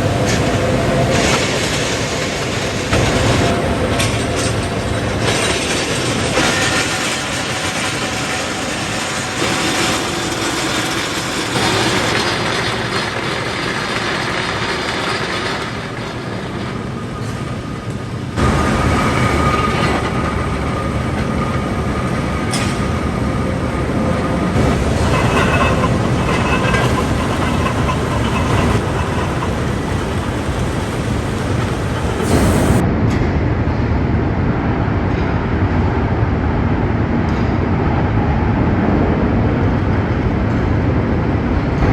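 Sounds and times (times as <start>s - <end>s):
steel mill machinery clattering: 0.0s - 32.9s.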